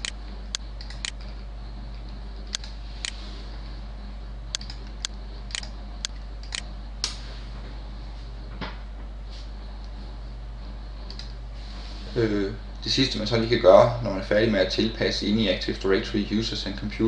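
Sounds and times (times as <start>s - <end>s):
computer mouse clicks: 0.0s - 1.3s, 2.5s - 3.2s, 4.5s - 6.6s, 11.1s - 11.4s
steady low hum: 0.0s - 17.0s.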